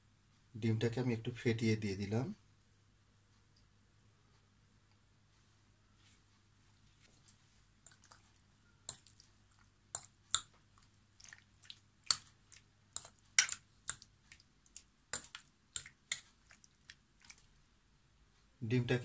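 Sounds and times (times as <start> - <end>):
wet squelches of mixing meat: 6.9 - 17.7.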